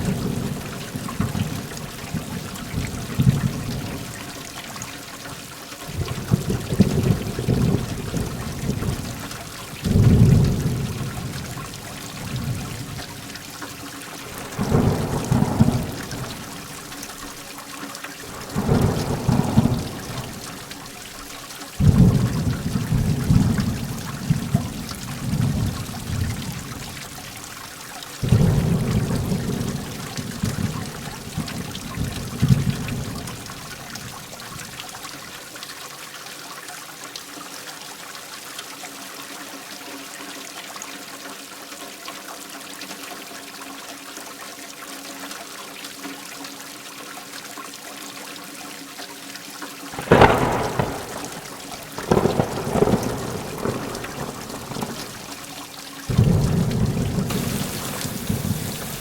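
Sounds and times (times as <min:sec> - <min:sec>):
heavy rain: 0:00.0 - 0:36.2, 0:49.9 - 0:59.0
thunder rumbling: 0:14.3 - 0:16.9, 0:18.3 - 0:20.8, 0:21.8 - 0:26.8, 0:50.0 - 0:59.0
sharp thunderclap: 0:18.5 - 0:20.6, 0:50.0 - 0:55.4, 0:56.1 - 0:59.0.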